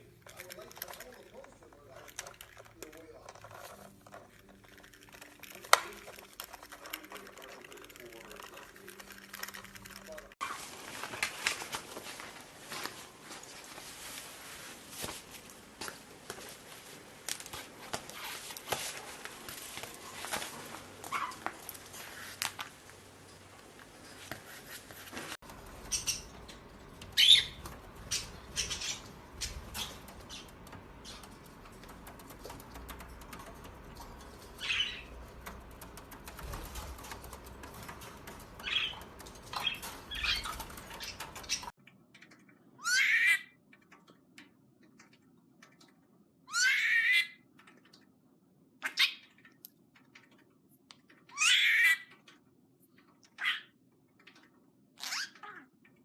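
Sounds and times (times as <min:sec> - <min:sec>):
soft rustling and clicking: 0:00.0 - 0:42.7
parrot chirping: 0:25.5 - 0:35.5, 0:36.2 - 0:41.7, 0:42.8 - 0:43.6, 0:46.5 - 0:47.4, 0:48.8 - 0:49.4, 0:51.3 - 0:52.1, 0:55.0 - 0:55.7.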